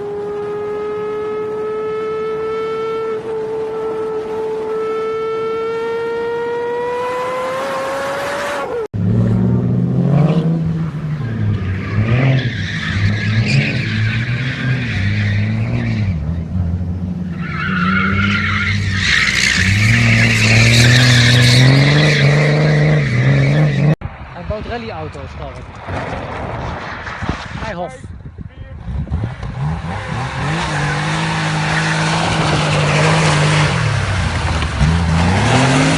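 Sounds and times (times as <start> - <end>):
car engine revving: 0.0 - 24.0, 28.8 - 35.9
tyres squealing: 17.3 - 24.0.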